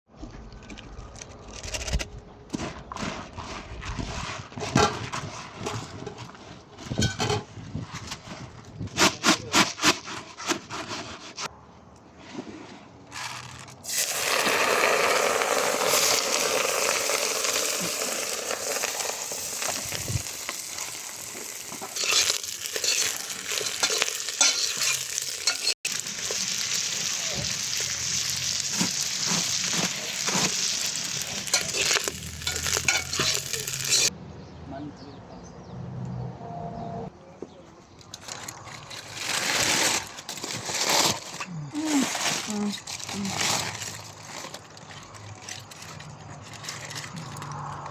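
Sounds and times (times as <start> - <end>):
knocks and scrapes: 0.1 - 13.9, 28.7 - 34.2, 37.4 - 47.9
meat sizzling: 13.8 - 34.1.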